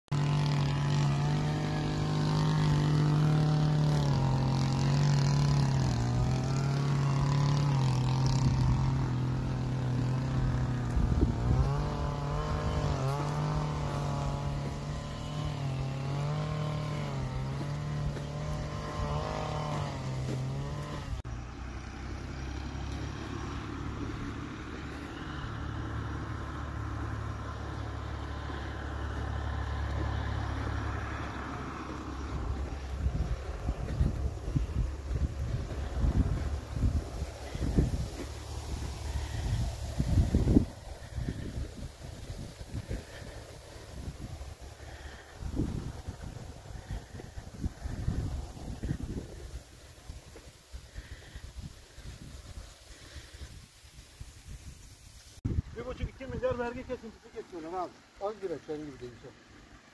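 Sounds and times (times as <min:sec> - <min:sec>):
motor vehicle engine droning: 0:00.1 - 0:59.9.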